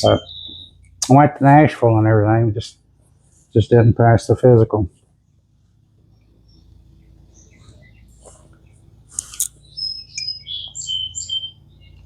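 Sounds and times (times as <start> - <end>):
songbirds chirping and whistling: 0.0 - 3.9, 5.2 - 12.0
low steady hum: 0.0 - 12.0.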